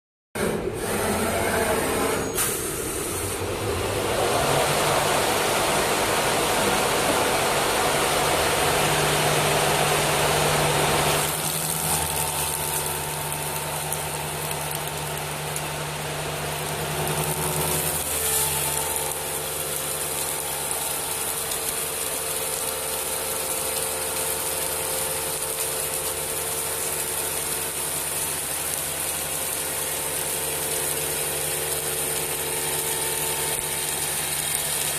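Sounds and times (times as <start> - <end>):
lathe machine hum: 0.4 - 2.2, 2.9 - 22.9.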